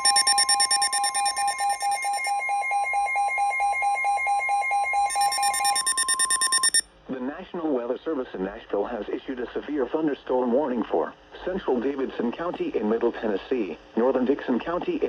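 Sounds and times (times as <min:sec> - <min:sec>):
two alert tones: 0:00.0 - 0:04.0.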